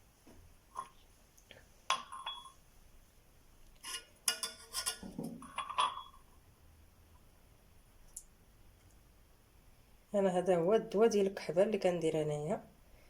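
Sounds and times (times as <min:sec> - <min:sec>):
glassware and utensils clinking: 0:01.9 - 0:02.6, 0:04.0 - 0:06.3.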